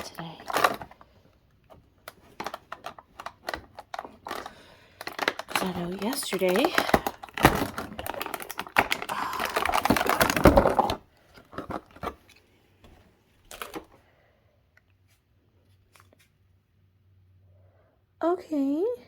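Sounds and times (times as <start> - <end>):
packaging crackling and tearing: 0.0 - 1.1, 2.1 - 12.3, 13.5 - 13.9.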